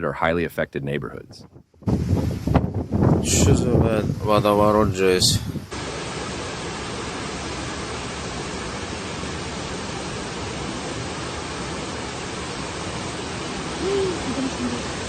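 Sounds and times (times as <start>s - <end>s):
floodwater rushing: 5.7s - 15.0s.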